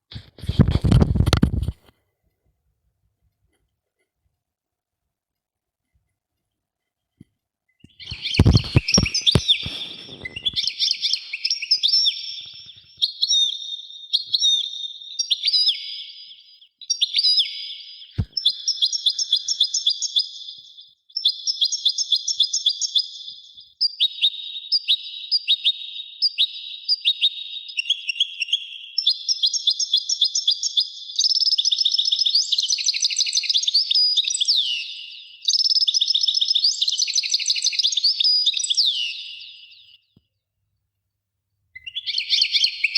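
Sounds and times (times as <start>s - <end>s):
songbird trilling: 7.8s - 40.0s, 41.8s - 42.9s.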